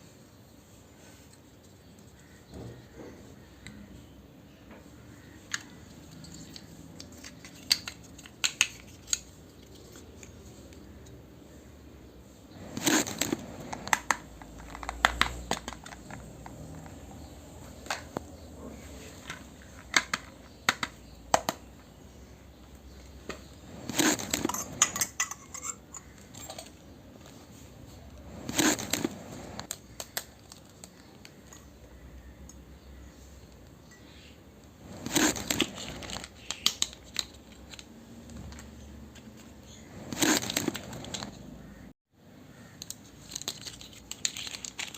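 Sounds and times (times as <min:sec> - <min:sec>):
handling noise: 0:23.0 - 0:29.8, 0:34.8 - 0:36.6.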